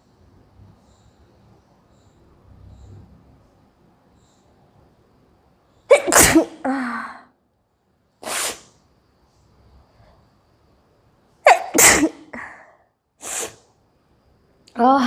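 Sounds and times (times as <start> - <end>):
woman sneezing: 5.9 - 7.0, 11.4 - 13.6
short noisy breath: 12.4 - 13.7.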